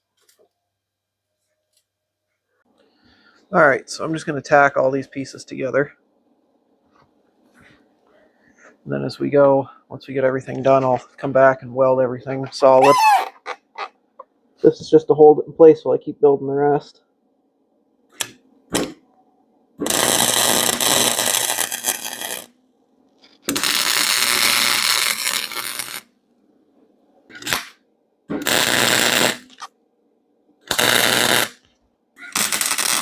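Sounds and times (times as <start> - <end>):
welding arc hiss: 19.8 - 22.5, 23.5 - 26.0, 28.4 - 29.7, 30.7 - 31.6, 32.3 - 33.0.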